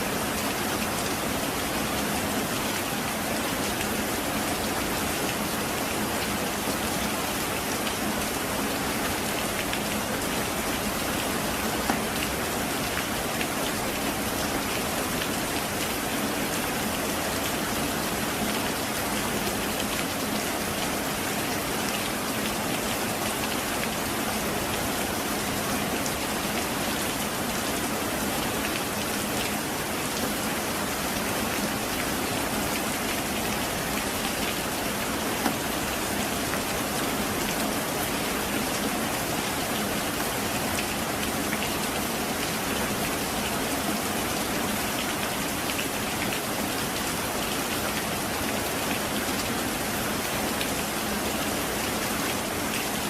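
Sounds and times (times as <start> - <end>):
heavy rain: 0.0 - 53.0.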